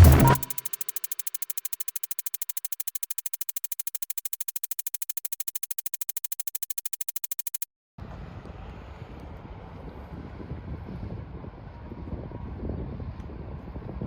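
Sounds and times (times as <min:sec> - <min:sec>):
rapid electronic pulsing: 0:00.0 - 0:07.7.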